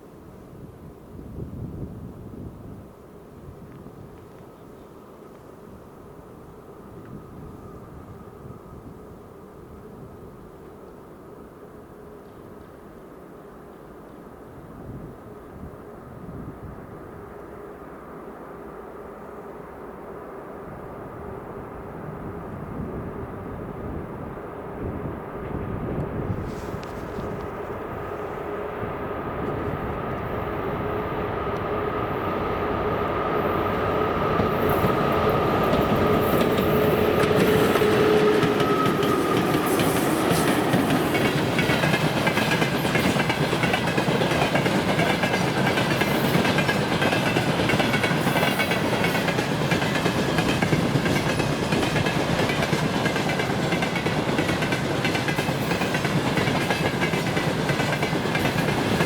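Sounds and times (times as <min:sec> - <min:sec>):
electric locomotive whine: 0:00.0 - 0:59.0
train wheels clickety-clack: 0:34.3 - 0:59.0.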